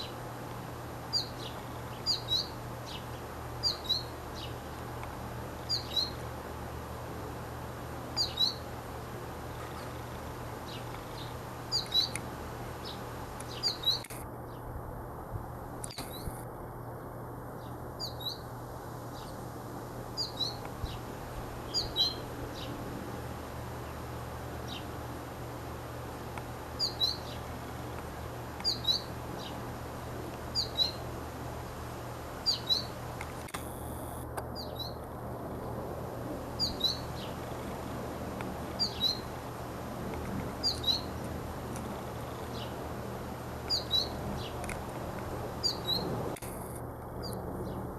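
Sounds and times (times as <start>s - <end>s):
low background hum: 0.0s - 47.9s
sparrow chirping: 1.1s - 4.7s, 5.6s - 6.2s, 8.2s - 8.7s, 10.6s - 12.2s, 12.8s - 14.7s, 17.6s - 18.5s, 20.2s - 21.0s, 21.6s - 22.8s, 24.6s - 24.9s, 26.8s - 27.5s, 28.6s - 29.6s, 30.5s - 31.1s, 32.4s - 33.0s, 34.6s - 35.0s, 36.6s - 37.5s, 38.8s - 39.4s, 40.6s - 41.2s, 42.2s - 42.8s, 43.6s - 44.7s, 45.6s - 46.1s.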